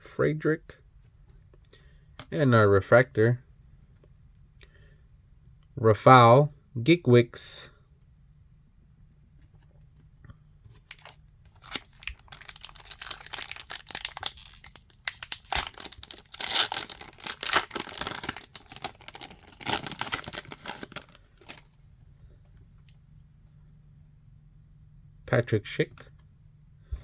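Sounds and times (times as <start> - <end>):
foil wrapper tearing and crinkling: 10.8 - 21.7.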